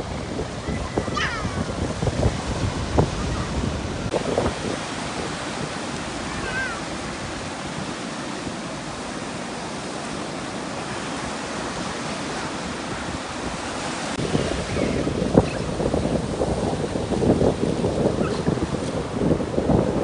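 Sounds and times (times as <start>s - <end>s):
surf on sandy beach: 0.0s - 20.0s.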